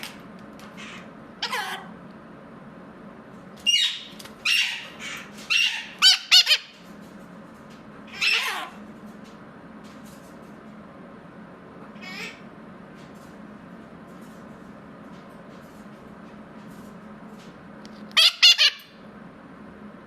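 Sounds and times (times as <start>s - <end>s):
parrot squawking: 0.8s - 2.0s, 3.6s - 6.8s, 8.1s - 8.8s, 11.9s - 12.5s, 18.1s - 19.0s.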